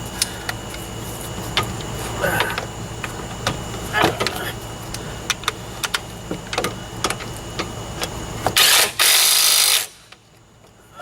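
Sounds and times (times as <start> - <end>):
cordless power tool running: 1.5 - 10.1.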